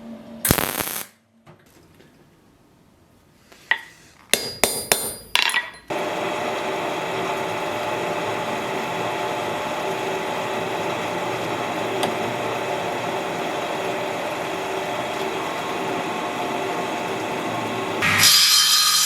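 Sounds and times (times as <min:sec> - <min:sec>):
electric motor humming: 0:05.9 - 0:18.1.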